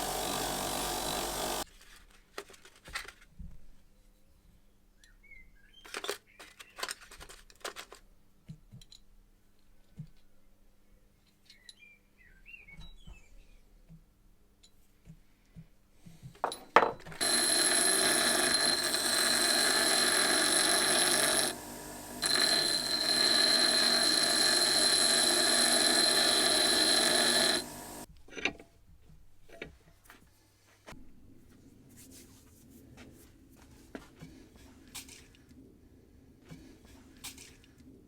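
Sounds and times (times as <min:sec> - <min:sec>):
power tool metallic whine: 0:00.0 - 0:01.6, 0:17.2 - 0:28.1.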